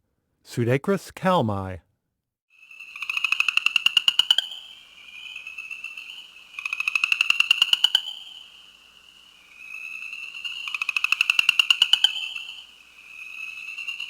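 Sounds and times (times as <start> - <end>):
frog trilling: 2.9 - 8.7, 9.5 - 14.0.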